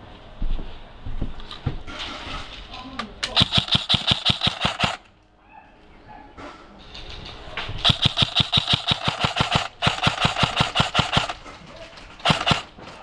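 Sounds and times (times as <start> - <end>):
airsoft rifle firing full auto: 3.4 - 5.1, 7.8 - 11.4, 12.2 - 12.7.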